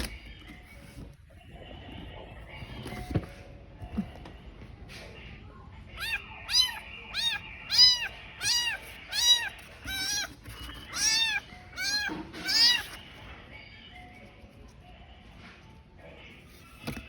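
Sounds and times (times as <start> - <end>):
kitten meowing: 6.0 - 13.0.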